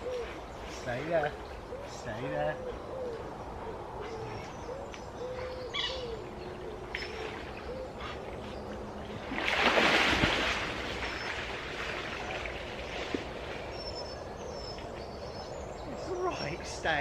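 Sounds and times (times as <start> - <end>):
soft low hooting calls: 0.0 - 9.2
loud water splash: 9.2 - 12.5.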